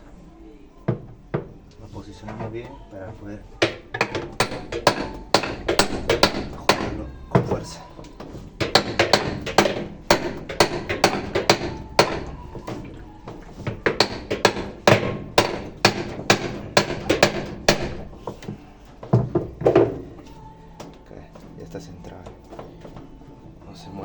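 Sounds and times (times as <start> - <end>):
hammer striking metal wrench: 3.6 - 7.6, 8.6 - 12.9, 13.6 - 18.5.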